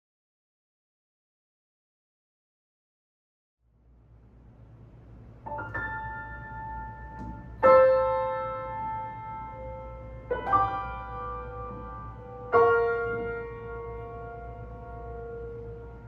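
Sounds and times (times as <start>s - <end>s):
piano chords ringing: 5.0s - 16.0s.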